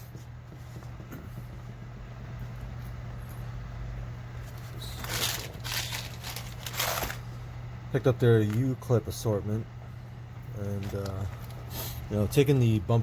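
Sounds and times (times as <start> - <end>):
steady low hum: 0.0 - 13.0
packaging rustling: 4.5 - 7.3.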